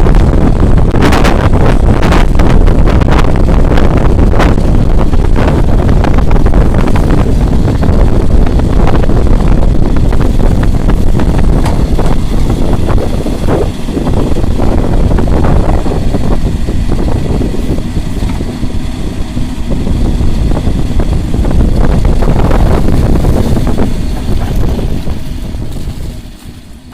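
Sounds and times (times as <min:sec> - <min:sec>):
diesel engine running: 0:00.0 - 0:26.9
wind buffeting microphone: 0:00.0 - 0:26.9.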